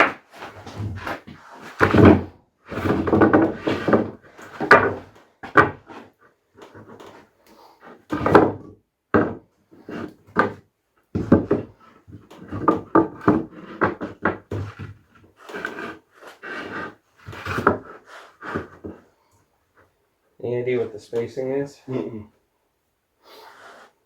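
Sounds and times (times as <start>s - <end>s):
wooden boards knocking and clattering: 0.0s - 7.2s, 8.1s - 19.0s.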